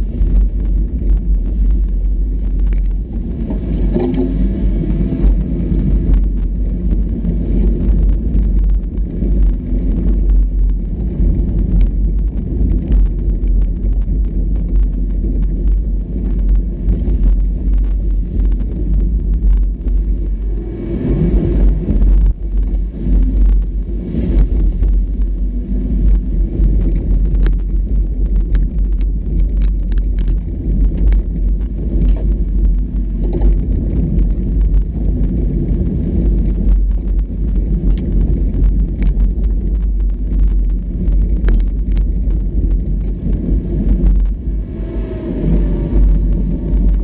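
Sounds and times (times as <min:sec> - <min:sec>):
off-road vehicle rumbling: 0:00.0 - 0:47.0
rattles and knocks: 0:02.7 - 0:05.4.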